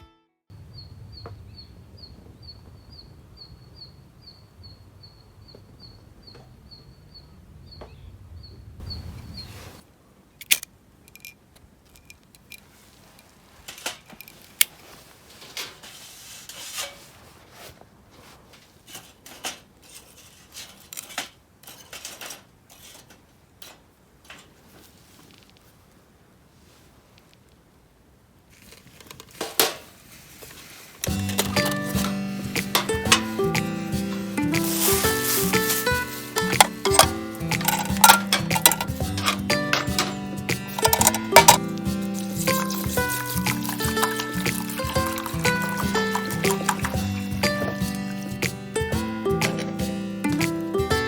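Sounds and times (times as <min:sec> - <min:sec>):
clicks taps and scrapes of handling: 0:30.4 - 0:50.9.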